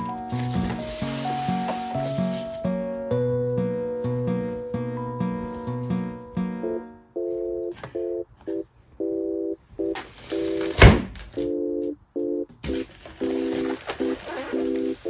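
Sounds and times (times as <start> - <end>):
sharp knock: 10.8 - 11.2.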